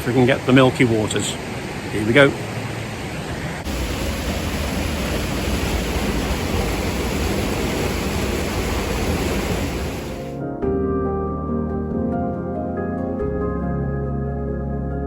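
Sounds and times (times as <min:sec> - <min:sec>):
waterfall rushing: 0:03.6 - 0:10.4
soft ambient music: 0:10.3 - 0:15.0.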